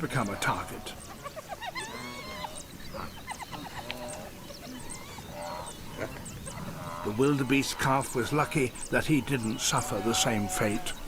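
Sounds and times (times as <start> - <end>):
high-pitched animal cries and squeals: 1.0 - 5.6.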